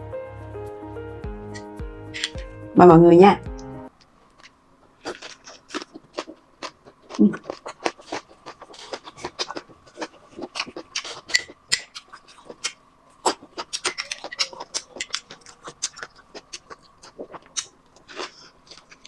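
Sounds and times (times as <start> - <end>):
close chewing and mouth sounds: 4.3 - 19.0.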